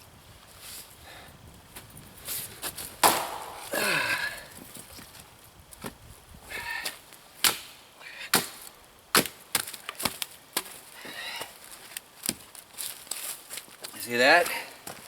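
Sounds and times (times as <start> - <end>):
axe chopping log: 3.0 - 3.8, 7.4 - 10.7.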